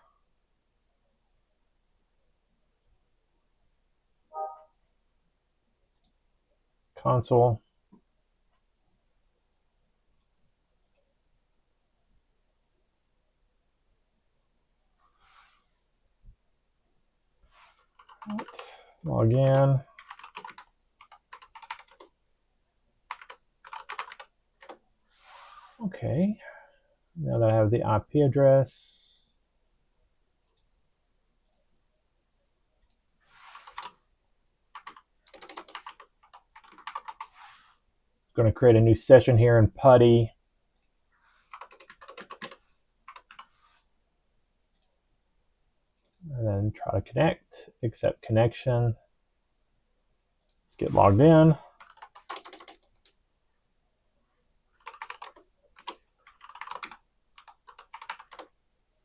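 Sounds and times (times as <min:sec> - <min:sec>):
keyboard typing: 0:17.9 - 0:18.7, 0:20.0 - 0:22.2, 0:23.1 - 0:24.8, 0:33.6 - 0:34.0, 0:34.7 - 0:37.3, 0:41.5 - 0:43.5, 0:51.8 - 0:53.2, 0:54.8 - 0:58.6.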